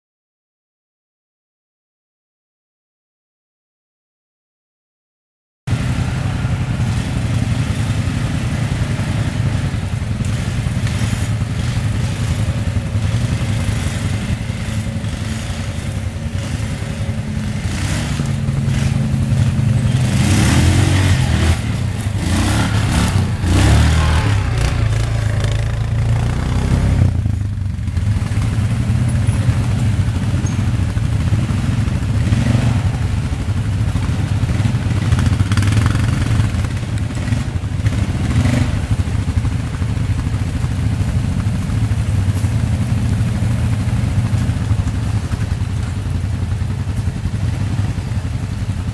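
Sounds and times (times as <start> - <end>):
atv engine running: 5.7 - 48.9
clatter: 24.2 - 48.9.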